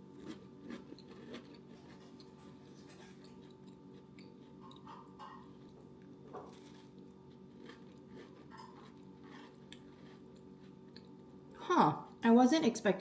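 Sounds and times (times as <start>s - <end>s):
person chewing crunchy cracker: 0.0s - 11.4s.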